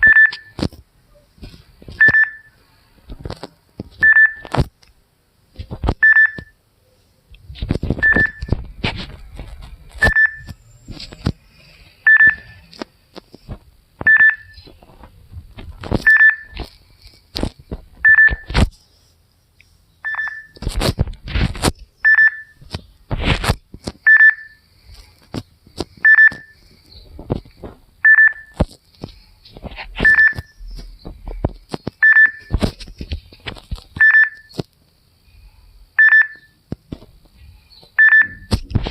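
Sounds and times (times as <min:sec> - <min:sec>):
high electronic beep: 0:00.0 - 0:00.6, 0:02.0 - 0:02.6, 0:04.0 - 0:04.4, 0:06.0 - 0:06.5, 0:08.0 - 0:08.5, 0:10.0 - 0:10.8, 0:12.0 - 0:12.6, 0:14.1 - 0:14.6, 0:16.1 - 0:16.5, 0:18.0 - 0:18.5, 0:20.0 - 0:20.6, 0:22.0 - 0:22.6, 0:26.0 - 0:26.6, 0:28.0 - 0:28.6, 0:30.0 - 0:30.7, 0:32.0 - 0:32.5, 0:34.0 - 0:34.5, 0:36.0 - 0:36.5, 0:38.0 - 0:38.6
sharp clicks and knocks: 0:37.8 - 0:38.9.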